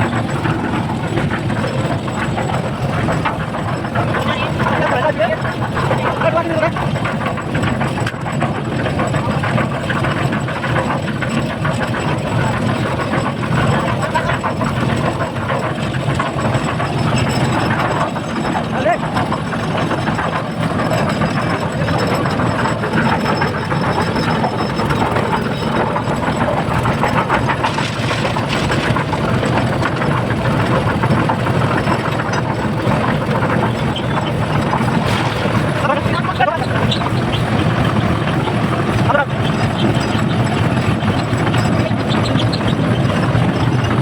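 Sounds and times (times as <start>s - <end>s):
indistinct voices: 0.0s - 7.7s, 16.9s - 25.1s, 25.8s - 44.0s
engine running: 0.0s - 44.0s.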